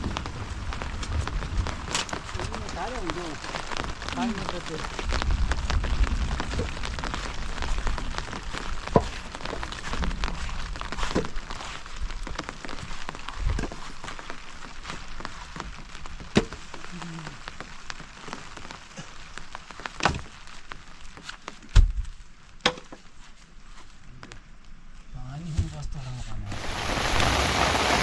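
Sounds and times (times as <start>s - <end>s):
rain falling: 0.0s - 21.7s, 26.5s - 28.0s
water drips: 26.5s - 28.0s.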